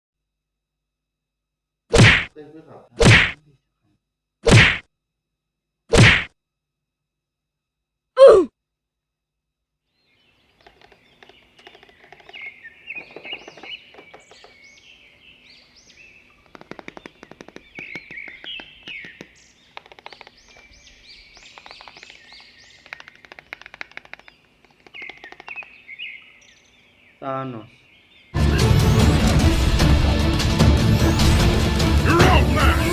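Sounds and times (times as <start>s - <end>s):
small birds chirping: 9.8s - 28.6s
bird rattling trills: 10.4s - 26.8s.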